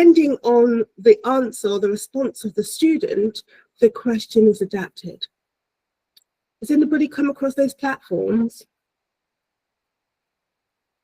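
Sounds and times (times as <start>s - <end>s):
faint background hiss: 0.0s - 11.0s.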